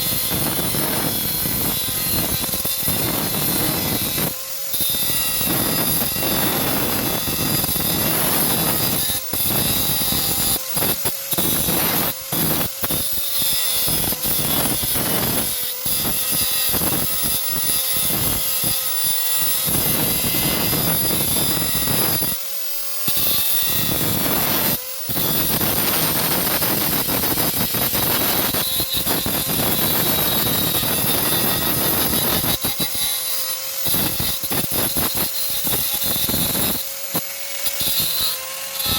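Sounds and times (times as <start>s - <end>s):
power tool grinding metal: 0.0s - 38.9s.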